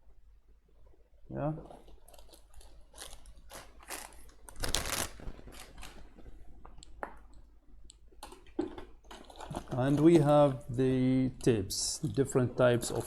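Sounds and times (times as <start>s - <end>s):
packaging rustling: 1.7s - 6.7s.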